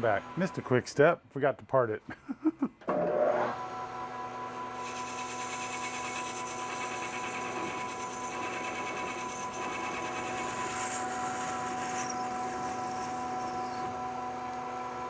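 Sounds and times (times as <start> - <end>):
metal-cutting machine whining: 4.8 - 14.2.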